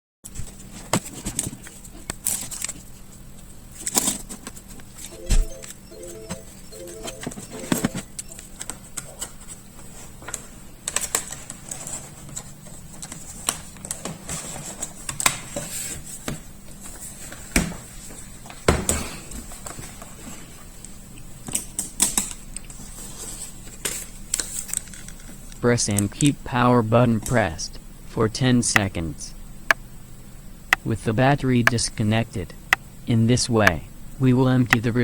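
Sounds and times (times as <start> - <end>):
faint steady high tone: 5.1 - 8.6.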